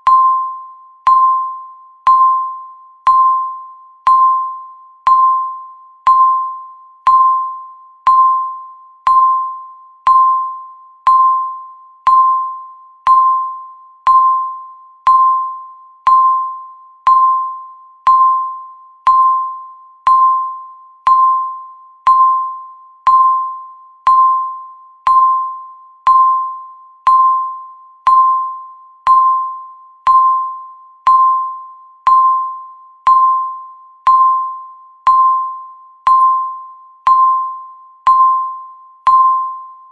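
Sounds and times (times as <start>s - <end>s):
countdown timer beeping: 0.0s - 39.9s.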